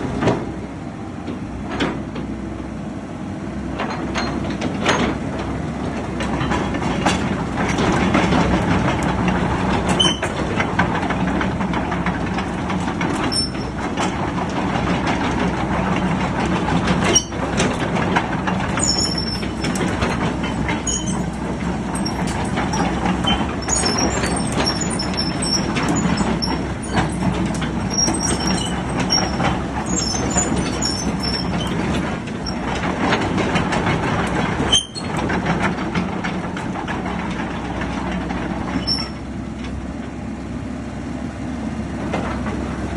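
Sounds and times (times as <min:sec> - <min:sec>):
excavator diesel engine humming: 0:00.0 - 0:42.9
metallic clanks: 0:06.2 - 0:39.2
short high squeaks: 0:13.3 - 0:13.8, 0:18.8 - 0:20.0, 0:20.8 - 0:31.8, 0:34.7 - 0:35.1.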